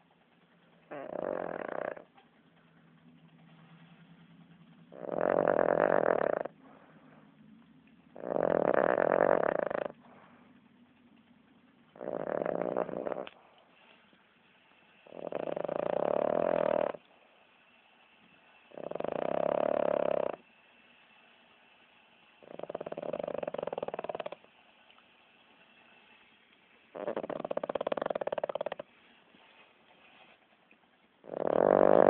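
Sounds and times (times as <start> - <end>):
quiet breaths: 0.0 - 32.0
person snoring: 0.9 - 2.0, 5.0 - 6.6, 8.2 - 10.0, 12.0 - 13.4, 15.1 - 17.0, 18.7 - 20.4, 22.4 - 24.4, 27.0 - 28.9, 31.3 - 32.0.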